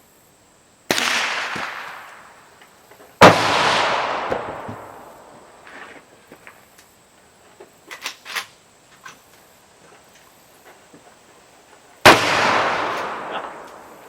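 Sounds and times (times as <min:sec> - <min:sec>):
rifle shots with echo: 0:00.9 - 0:02.3, 0:03.2 - 0:05.4, 0:12.0 - 0:14.0.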